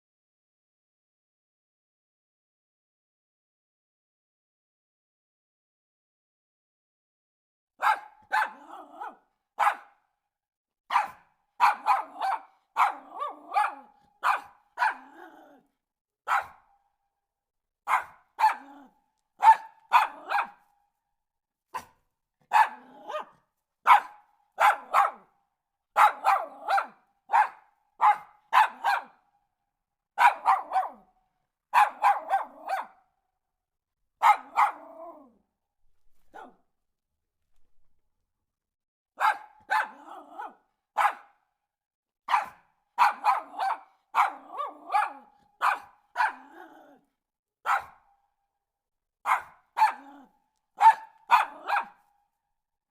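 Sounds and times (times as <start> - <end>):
dog barking: 7.8 - 10.2, 10.9 - 15.6, 16.2 - 16.9, 17.8 - 20.7, 21.7 - 29.3, 30.2 - 31.1, 31.7 - 33.2, 34.2 - 35.4, 36.1 - 36.7, 39.2 - 41.6, 42.2 - 47.0, 47.6 - 48.1, 49.2 - 52.1.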